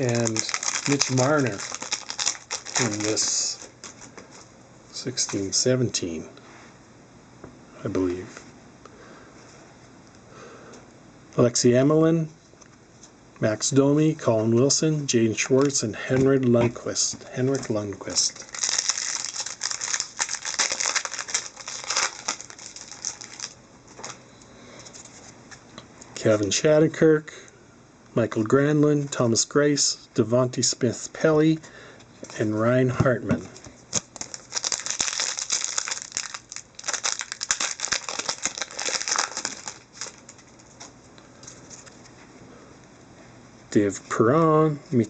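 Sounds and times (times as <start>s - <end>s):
wrapper crinkling: 0.0s - 4.5s, 17.5s - 24.2s, 33.9s - 42.0s.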